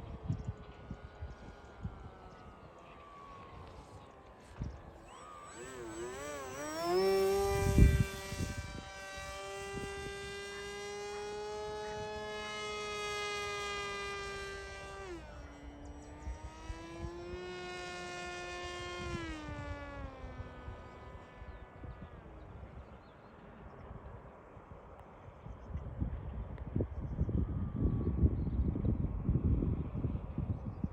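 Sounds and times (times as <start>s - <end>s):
wind buffeting microphone: 0.0s - 23.0s, 25.4s - 30.9s
model plane motor whining: 0.0s - 23.2s.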